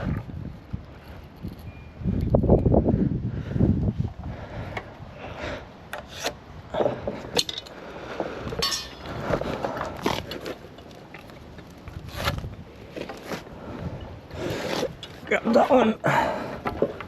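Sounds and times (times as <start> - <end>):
tools clinking: 8.6 - 9.1.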